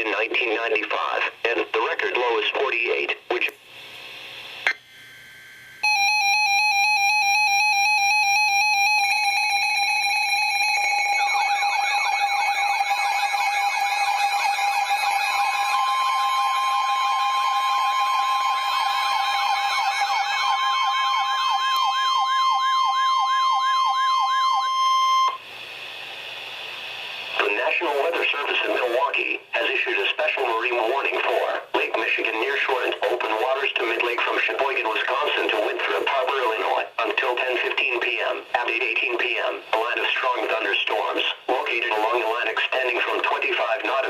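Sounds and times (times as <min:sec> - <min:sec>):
buzzy electronic beeping tone: 0:08.9 - 0:25.4
siren-like falling sweeps: 0:11.1 - 0:25.4.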